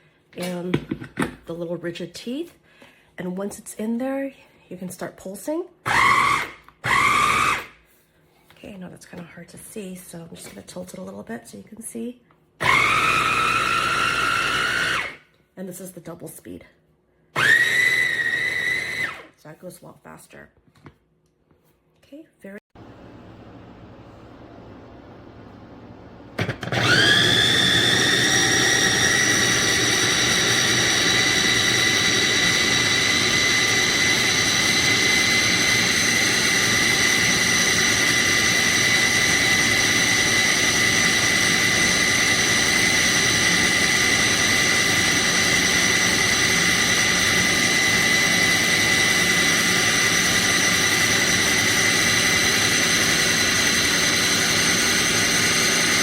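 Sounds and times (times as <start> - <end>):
food chopper motor whine: 5.8 - 7.8, 12.6 - 15.2, 17.4 - 19.3, 26.4 - 56.0.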